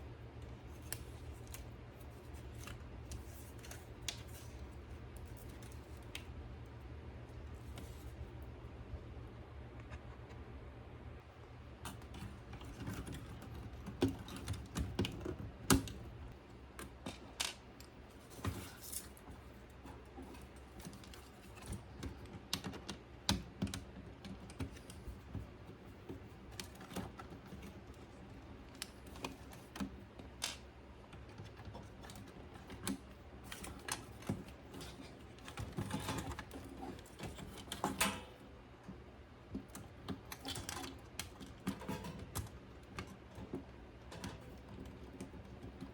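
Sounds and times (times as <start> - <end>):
low steady hum: 0.0 - 45.9
small parts and hand tools clicking: 39.5 - 45.9.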